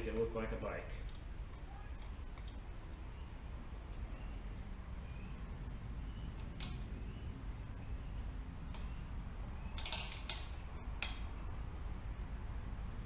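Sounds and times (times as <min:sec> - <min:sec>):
cricket chirping: 0:00.0 - 0:13.0
hand tools clicking on bolts: 0:09.7 - 0:11.2.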